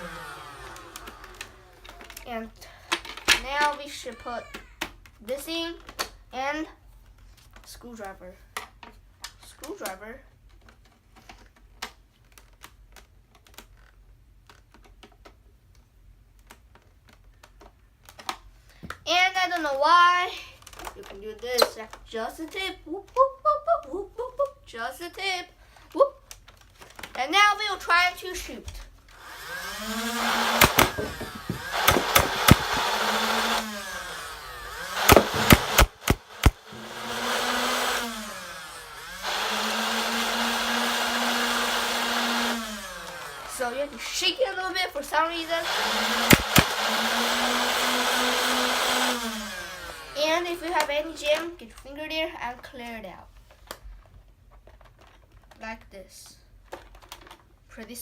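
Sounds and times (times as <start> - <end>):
toy blaster flywheels whining: 0.0 - 2.3, 29.1 - 51.0
screwdriver clicking on plastic: 30.4 - 33.6, 34.9 - 36.9, 46.2 - 46.9
blaster shots cracking: 30.6 - 33.0, 35.1 - 36.6, 46.3 - 46.7.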